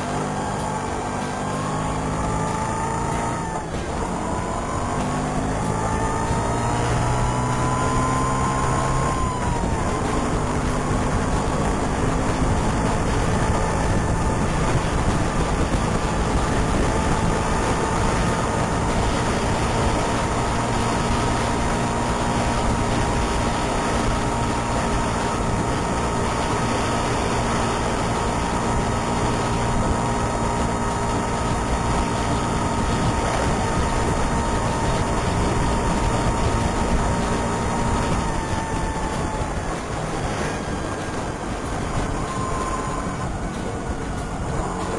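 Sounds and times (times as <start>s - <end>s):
scooter engine: 0.0s - 44.9s
siren-like whistle tone: 38.1s - 44.0s.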